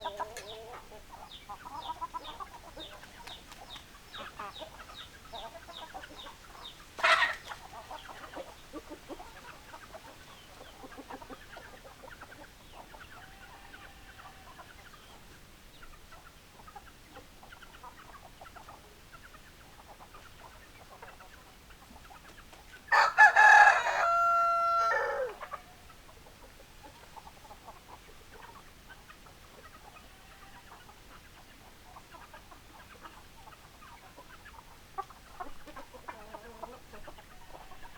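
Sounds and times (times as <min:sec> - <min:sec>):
hens clucking: 0:00.0 - 0:37.9
rooster crowing: 0:22.9 - 0:25.6.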